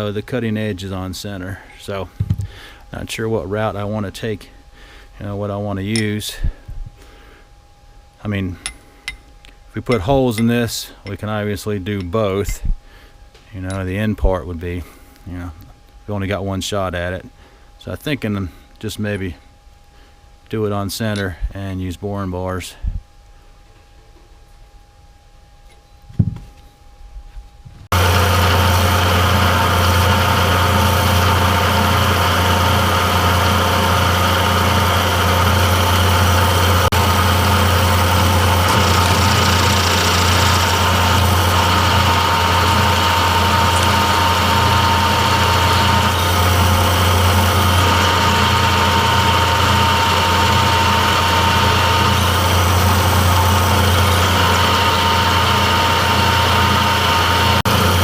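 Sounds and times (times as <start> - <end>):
machine tool humming and whining: 27.9 - 58.0.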